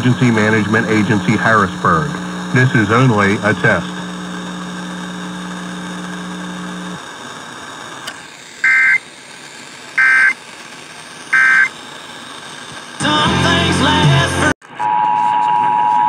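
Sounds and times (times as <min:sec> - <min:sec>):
steady low hum: 0:00.0 - 0:14.2
warbling two-tone data bursts: 0:08.6 - 0:09.0, 0:10.0 - 0:10.4, 0:11.3 - 0:11.7.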